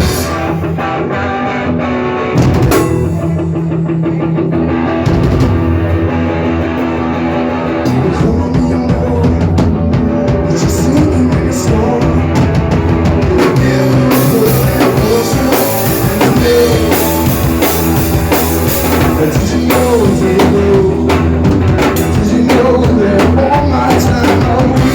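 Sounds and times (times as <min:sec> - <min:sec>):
drum kit: 0:00.0 - 0:24.9
rock band playing live: 0:00.0 - 0:24.9.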